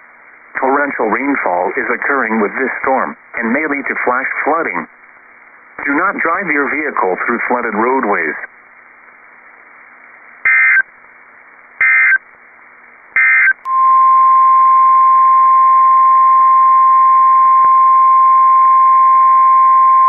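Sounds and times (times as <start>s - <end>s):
digital data tone bursts: 10.5s - 10.8s, 11.8s - 12.2s, 13.2s - 13.8s.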